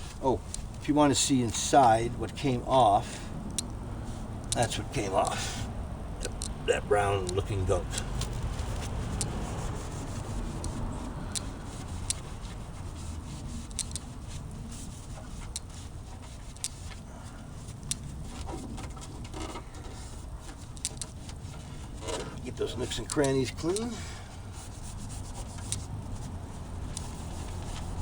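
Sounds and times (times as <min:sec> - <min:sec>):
paper towel rubbing plastic: 0:07.4 - 0:28.0
small clicks: 0:13.7 - 0:14.1.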